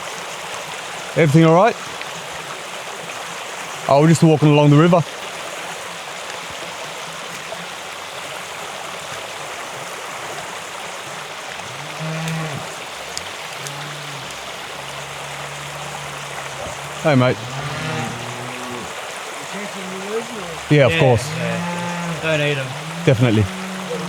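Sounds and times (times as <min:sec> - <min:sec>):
creek water running: 0:00.0 - 0:24.0
cattle mooing: 0:11.6 - 0:24.0.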